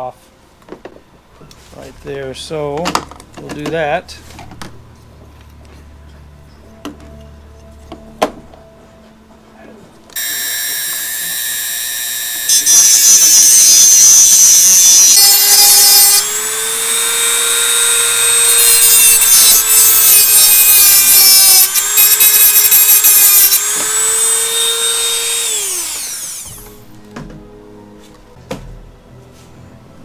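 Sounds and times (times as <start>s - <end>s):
rotary tool motor whine: 10.2s - 26.9s.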